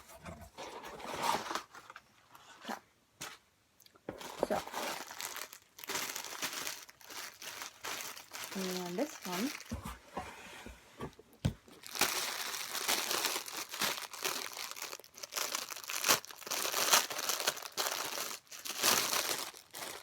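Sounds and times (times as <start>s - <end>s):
packaging crinkling and tearing: 4.2s - 9.8s, 11.7s - 20.0s.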